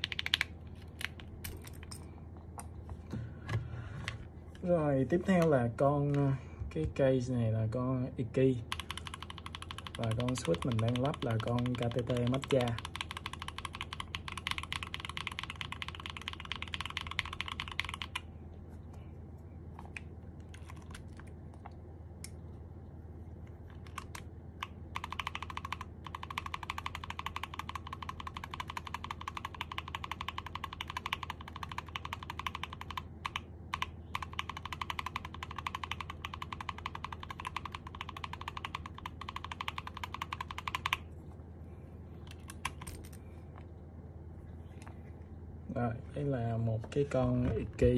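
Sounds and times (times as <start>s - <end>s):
mechanical keyboard typing: 0.0s - 1.2s, 8.7s - 18.2s, 19.9s - 21.3s, 23.7s - 41.1s.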